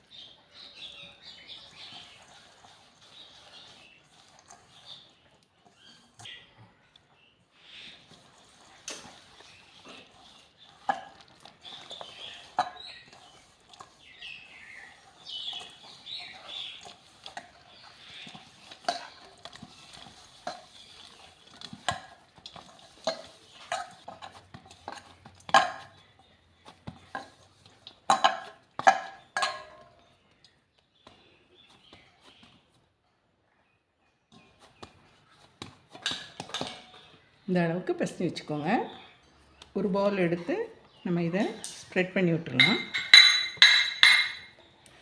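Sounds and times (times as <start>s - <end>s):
dough scraping in a bowl: 0.1s - 6.4s, 7.6s - 30.1s.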